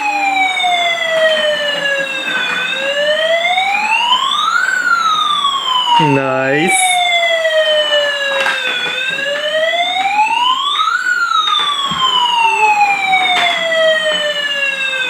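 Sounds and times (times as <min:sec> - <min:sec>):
toy siren wailing: 0:00.0 - 0:15.0.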